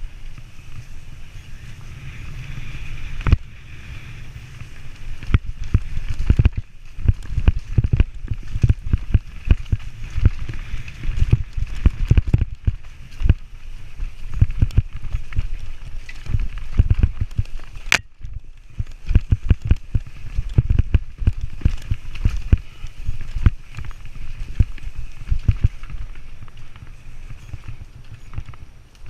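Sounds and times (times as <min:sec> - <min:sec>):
mountain bike clattering on trail: 0:00.0 - 0:29.0.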